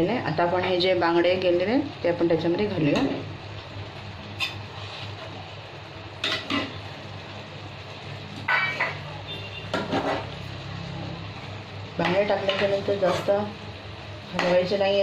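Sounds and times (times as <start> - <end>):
metal utensils clinking on pan: 6.2 - 6.8, 8.4 - 9.1, 12.0 - 13.4.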